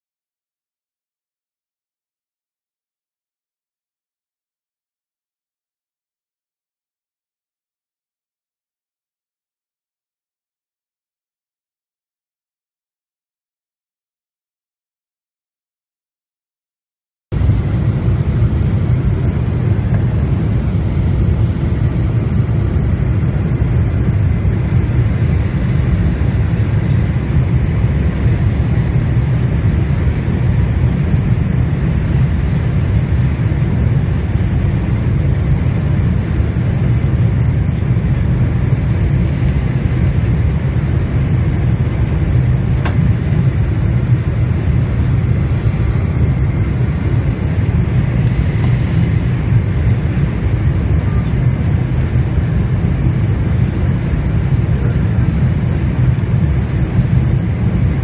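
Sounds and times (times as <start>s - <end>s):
aircraft cabin engine rumble: 17.3s - 58.0s.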